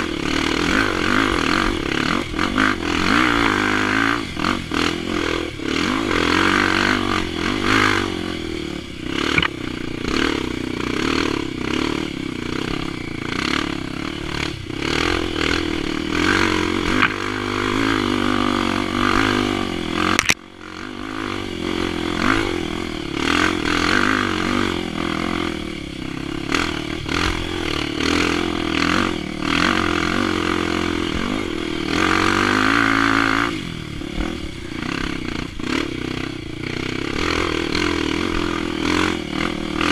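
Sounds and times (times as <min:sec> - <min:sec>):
motorbike engine revving: 0:00.0 - 0:39.9
motorbike clatter: 0:09.0 - 0:19.4.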